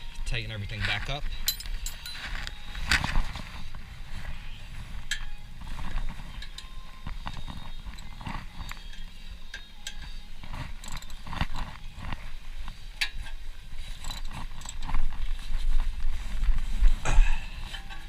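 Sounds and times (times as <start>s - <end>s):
socket ratchet clicking: 10.8s - 11.6s.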